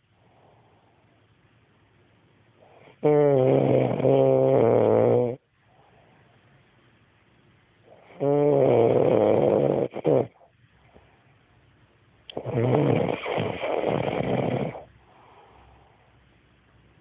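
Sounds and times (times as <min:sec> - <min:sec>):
quiet breathing: 0:00.0 - 0:01.4, 0:05.4 - 0:06.6, 0:10.3 - 0:11.6, 0:12.3 - 0:16.6
woman snoring: 0:02.8 - 0:05.4, 0:08.0 - 0:10.4, 0:12.3 - 0:14.9.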